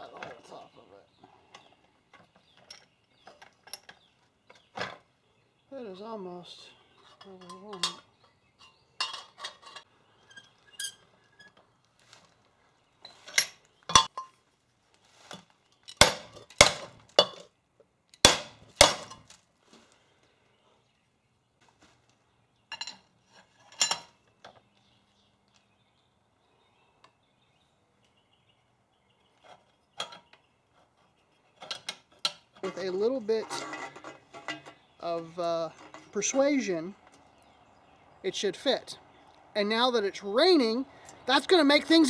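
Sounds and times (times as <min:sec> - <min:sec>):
hammer strikes on steel pipe: 0:18.3 - 0:19.2.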